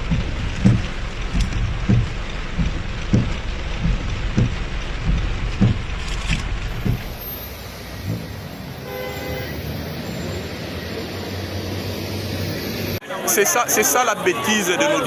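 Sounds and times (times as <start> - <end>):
flood water ambience: 0.0 - 15.0
traffic noise: 0.0 - 15.0
car horn: 8.7 - 9.8.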